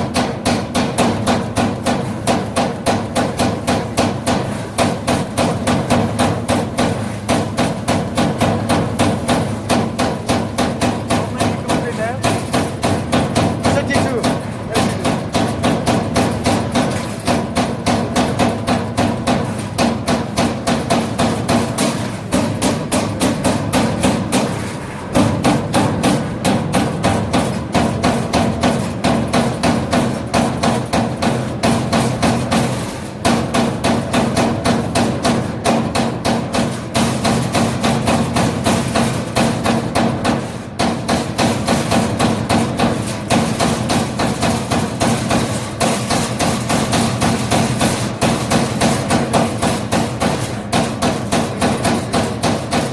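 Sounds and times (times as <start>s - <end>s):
punch press punching sheet metal: 0.0s - 52.9s.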